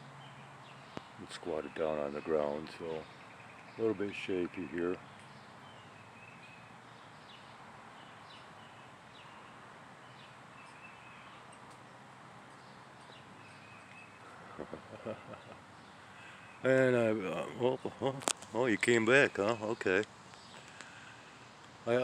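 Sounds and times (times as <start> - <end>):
faint steady hiss: 0.0 - 22.0
high bird chirps: 12.6 - 14.4.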